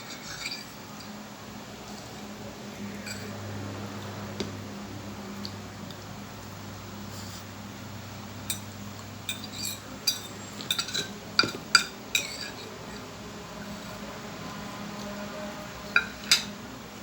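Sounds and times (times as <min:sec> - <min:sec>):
faint steady hum: 0:00.0 - 0:17.0
cutlery clinking on a plate: 0:03.0 - 0:03.3, 0:08.5 - 0:08.7, 0:09.3 - 0:12.7, 0:15.9 - 0:16.6.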